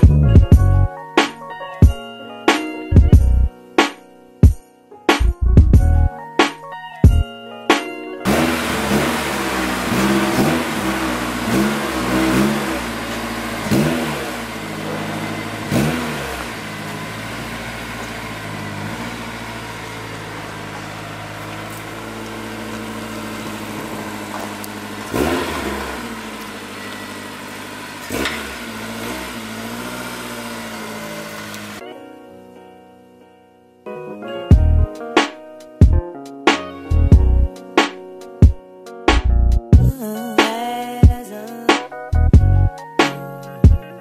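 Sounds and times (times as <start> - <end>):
car engine revving: 8.2 - 31.8.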